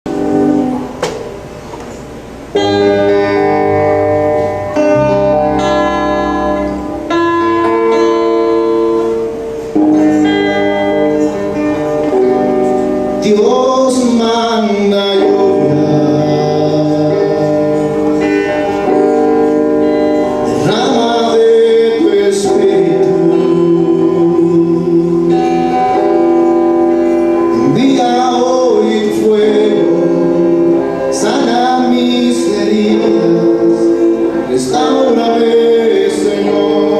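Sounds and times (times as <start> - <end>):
band playing worship song: 0.1 - 36.9
person singing: 9.8 - 36.9.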